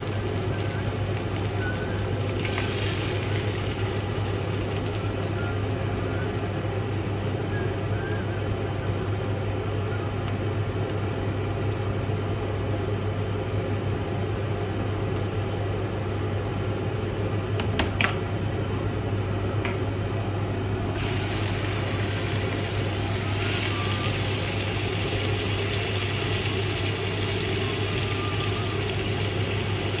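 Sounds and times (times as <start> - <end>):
meat sizzling in a pan: 0.0 - 9.6, 21.0 - 30.0.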